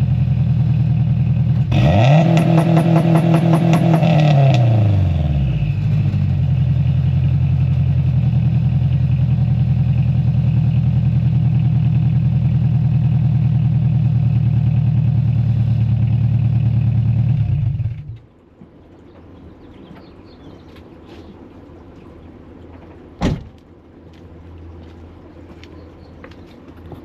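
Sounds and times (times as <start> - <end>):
car engine idling: 0.0 - 18.4.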